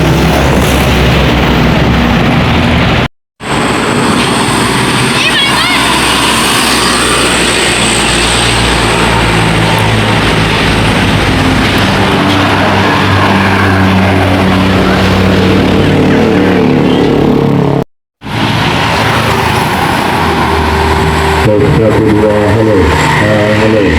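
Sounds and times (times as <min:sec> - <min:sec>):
diesel bus engine droning: 0:00.0 - 0:23.9
road noise: 0:00.0 - 0:23.9.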